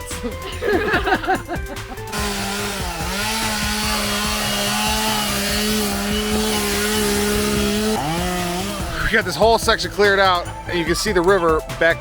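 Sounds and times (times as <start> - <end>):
chainsaw engine at high revs: 1.9 - 9.2.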